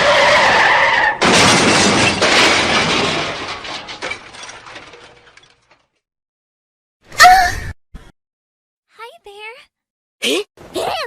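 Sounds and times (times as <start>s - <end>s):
car crash smash: 0.0s - 6.0s
debris clattering: 0.0s - 6.0s
glass breaking: 0.3s - 6.0s.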